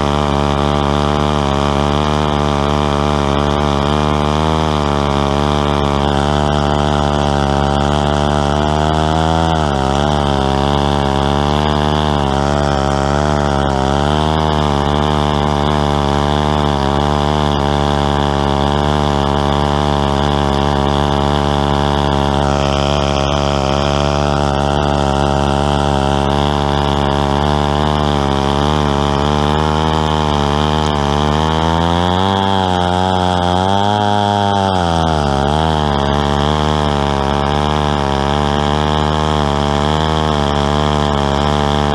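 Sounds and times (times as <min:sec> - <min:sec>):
chainsaw cutting a log: 0:00.0 - 0:41.9.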